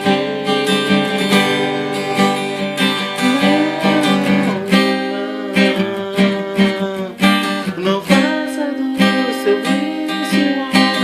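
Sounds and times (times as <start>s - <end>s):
gliding melody line: 0.0s - 5.8s
acoustic guitar strumming chords: 0.0s - 11.0s.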